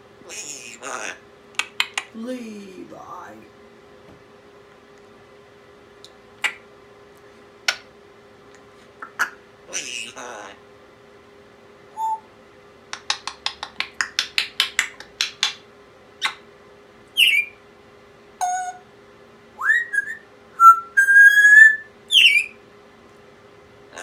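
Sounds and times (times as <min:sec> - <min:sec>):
parrot clicking and whistling: 0:01.6 - 0:02.1, 0:12.9 - 0:15.6.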